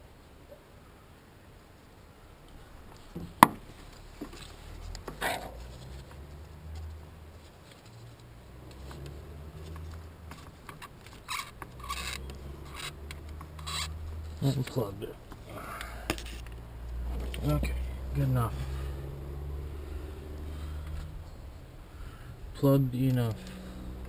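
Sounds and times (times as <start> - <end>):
low steady hum: 0.0 - 24.0
light clicks and rustling: 2.5 - 17.8.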